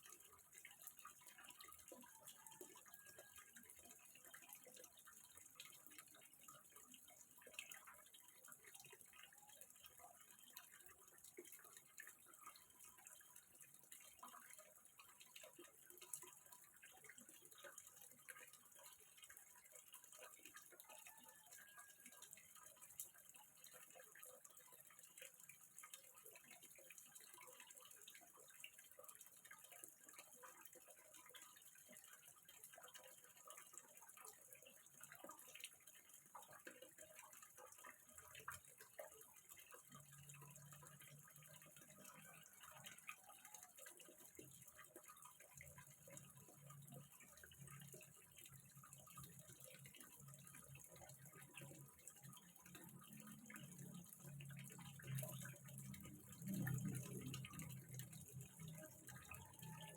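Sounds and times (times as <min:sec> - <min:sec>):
water dripping into a pond: 0:00.0 - 0:59.9.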